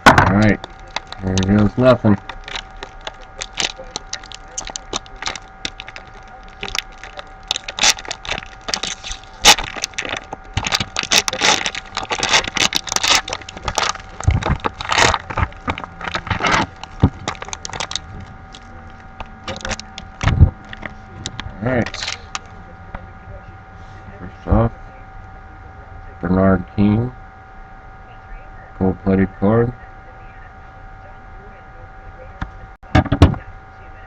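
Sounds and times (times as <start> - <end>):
plastic wrap and cardboard crinkling: 0.0 - 22.6.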